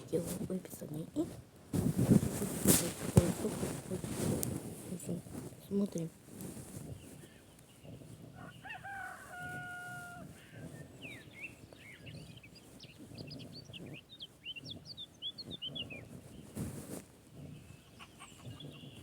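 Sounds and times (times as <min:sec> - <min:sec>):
small birds chirping: 0:00.0 - 0:19.0
rooster crowing: 0:08.4 - 0:10.6.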